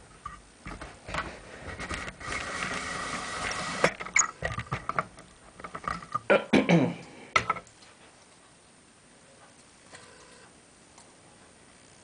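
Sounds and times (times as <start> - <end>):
metal computer case scraping: 1.1 - 4.9.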